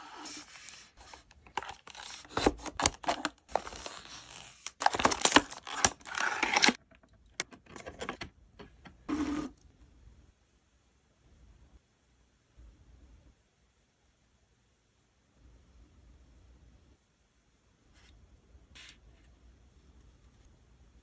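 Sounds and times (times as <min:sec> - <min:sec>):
packaging clicks and rustles: 0:01.0 - 0:08.3.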